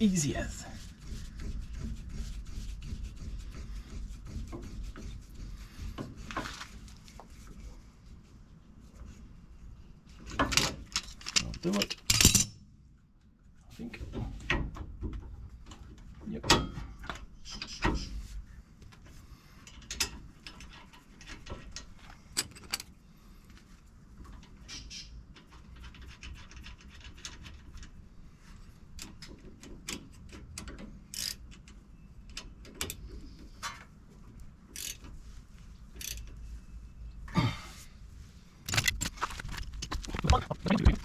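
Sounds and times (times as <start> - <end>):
hand tools clicking and clinking: 38.7 - 41.0.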